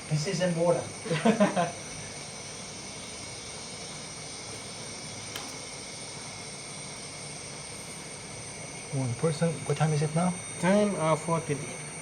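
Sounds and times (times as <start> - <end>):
steady background hiss: 0.0 - 12.0
small click: 5.3 - 5.6.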